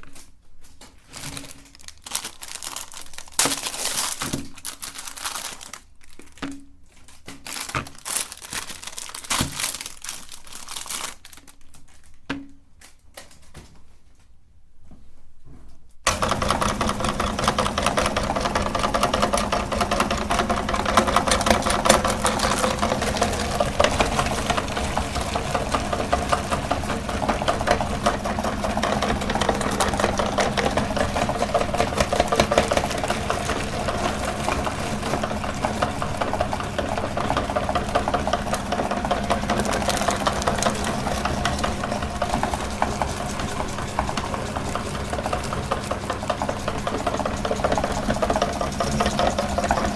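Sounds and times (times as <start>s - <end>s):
meat grinder motor hum: 16.1s - 49.9s.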